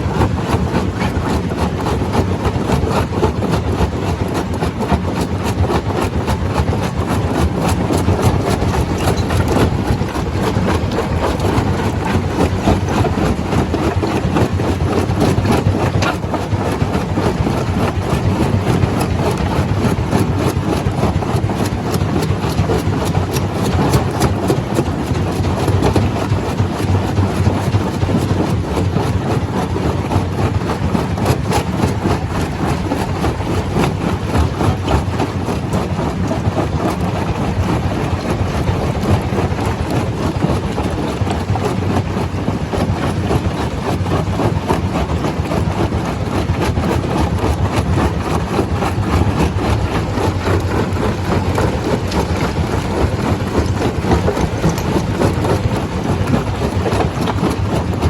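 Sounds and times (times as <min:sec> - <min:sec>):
stone crusher machine rumbling: 0:00.0 - 0:58.0.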